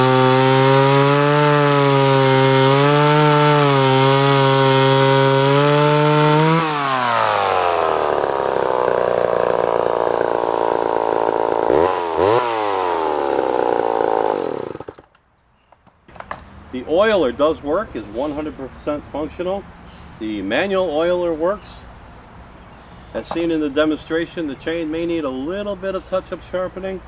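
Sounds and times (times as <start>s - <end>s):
chainsaw revving and idling: 0.0s - 15.1s.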